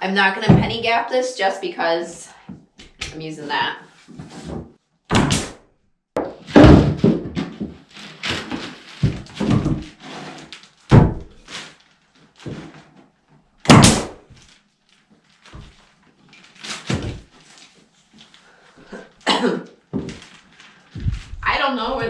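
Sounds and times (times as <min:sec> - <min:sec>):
wooden thumps and knocks: 0:04.5 - 0:05.5, 0:06.2 - 0:07.8, 0:09.0 - 0:09.9, 0:10.9 - 0:11.4, 0:13.7 - 0:14.2, 0:21.0 - 0:21.6.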